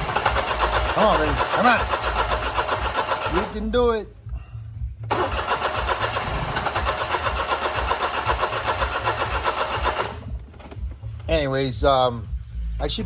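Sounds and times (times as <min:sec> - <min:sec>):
car engine cranking on starter: 0:00.0 - 0:03.7, 0:05.0 - 0:10.9.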